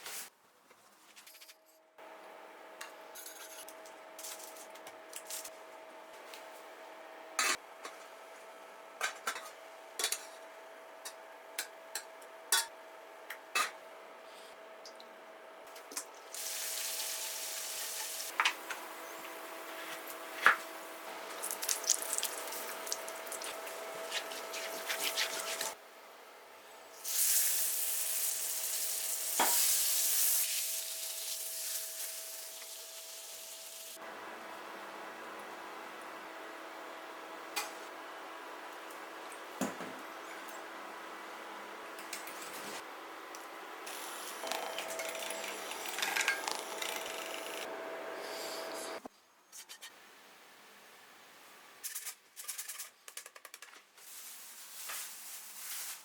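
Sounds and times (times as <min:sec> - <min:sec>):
food sizzling in hot pan: 0:16.4 - 0:18.4, 0:21.3 - 0:23.9, 0:27.0 - 0:34.0.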